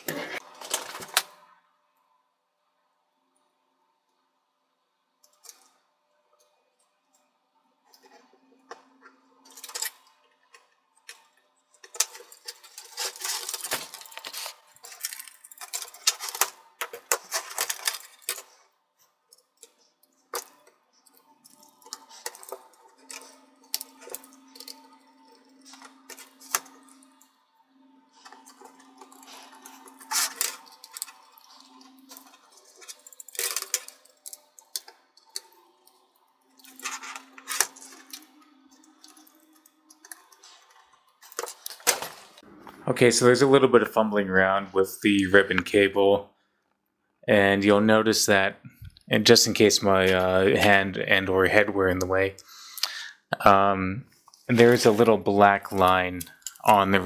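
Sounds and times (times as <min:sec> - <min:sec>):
rattling small plastic and metal parts: 0:09.4 - 0:42.4, 0:54.4 - 0:57.0.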